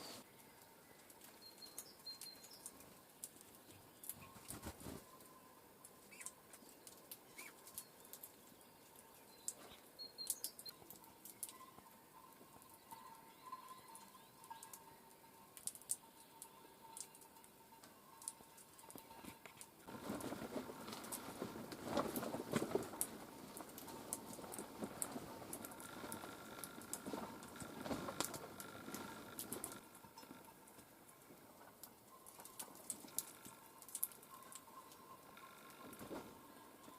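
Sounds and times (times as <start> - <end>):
rustling and wing flutter: 0.0 - 5.3, 18.2 - 36.9
bird chirp: 0.0 - 19.2
birds pecking clicks: 31.8 - 35.5.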